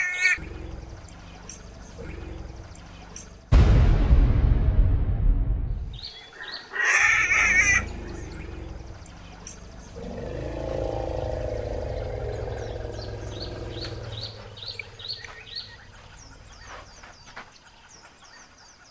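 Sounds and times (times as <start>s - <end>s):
birds chirping: 0.0s - 3.6s, 5.8s - 18.9s
baby elephant screaming: 6.8s - 8.3s.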